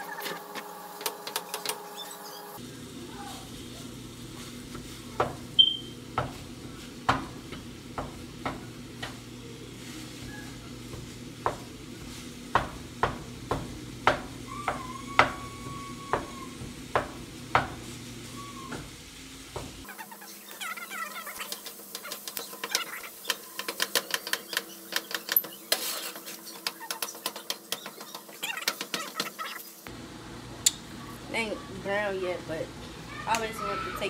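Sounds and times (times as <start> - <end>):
meat sizzling in a pan: 2.8 - 29.9.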